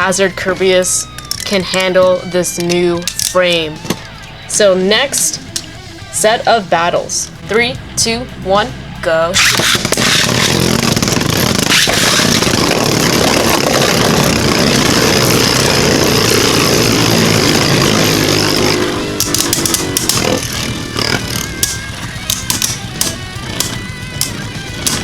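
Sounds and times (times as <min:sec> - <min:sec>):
spinning tops grinding together: 0:00.9 - 0:04.4, 0:09.4 - 0:25.0.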